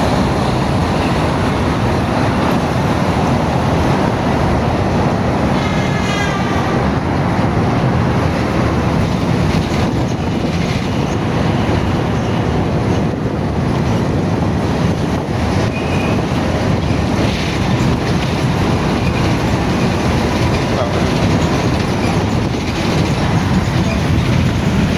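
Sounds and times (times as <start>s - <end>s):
crowded market din: 15.6s - 24.9s.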